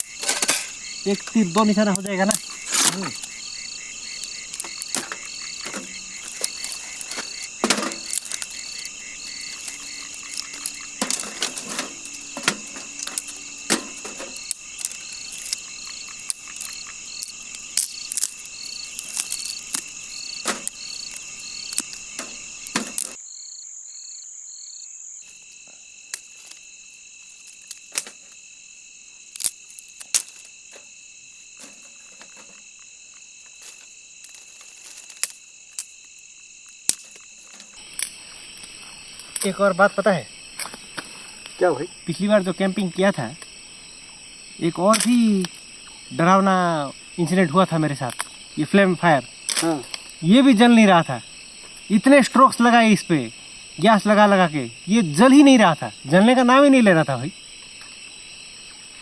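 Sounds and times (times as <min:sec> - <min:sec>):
frogs calling: 0:00.0 - 0:23.2, 0:25.2 - 0:59.0
sharp clicks and snaps: 0:00.0 - 0:23.2
crickets trilling: 0:00.0 - 0:59.0.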